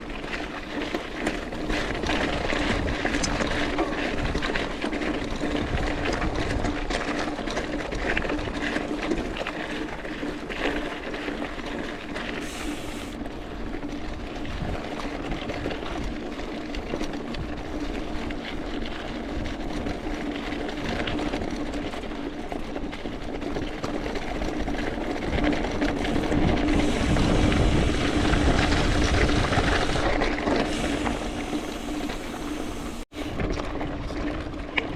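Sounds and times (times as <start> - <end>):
bike tyres on trail: 0.0 - 34.9
small rattles and clicks: 0.0 - 34.9
steady low hum: 26.0 - 33.4.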